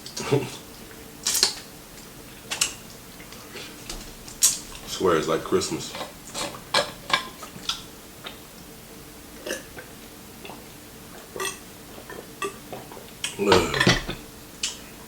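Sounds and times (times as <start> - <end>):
chewing crunchy fried chicken: 5.8 - 8.7
throaty sound: 13.4 - 14.2.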